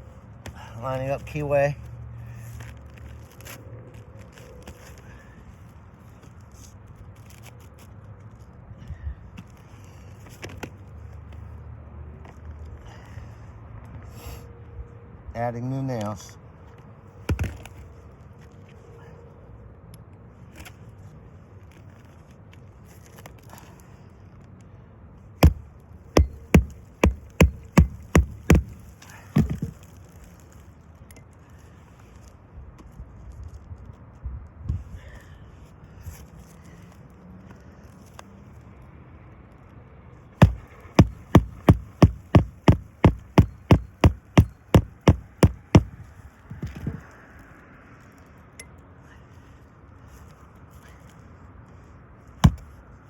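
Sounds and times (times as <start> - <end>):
hammer hitting nails: 25.4 - 25.6, 26.2 - 29.8, 40.4 - 45.9, 52.4 - 52.6.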